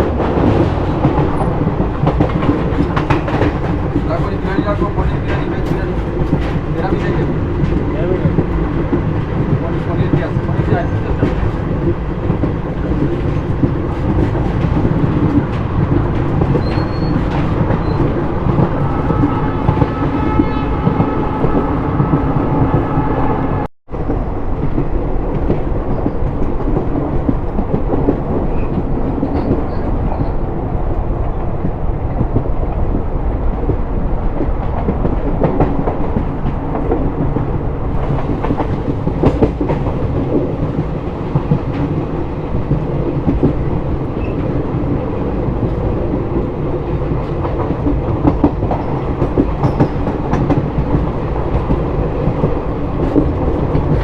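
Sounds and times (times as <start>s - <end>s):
train rumbling on board: 0.0s - 54.0s
locomotive horn: 18.7s - 23.7s.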